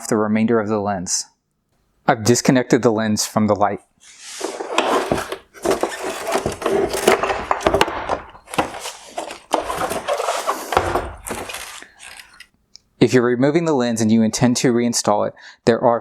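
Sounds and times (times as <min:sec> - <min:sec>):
hard plastic parts scraping: 0:04.1 - 0:12.5.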